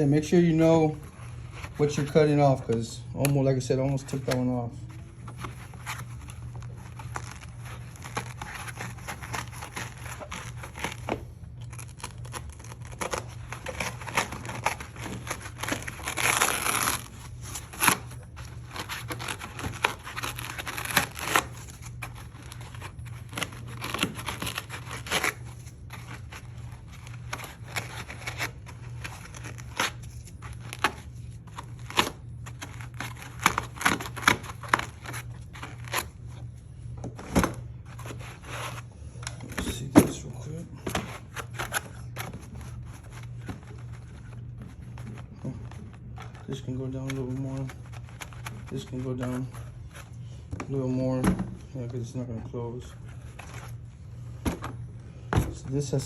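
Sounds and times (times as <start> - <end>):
steady low hum: 0.0 - 56.0
foam tearing and crackling: 5.4 - 36.2.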